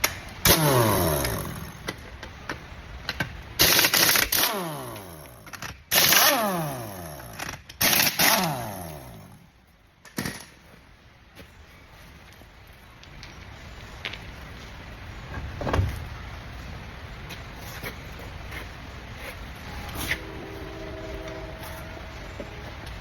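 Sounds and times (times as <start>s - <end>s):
tool spinning down whine: 19.7s - 23.0s.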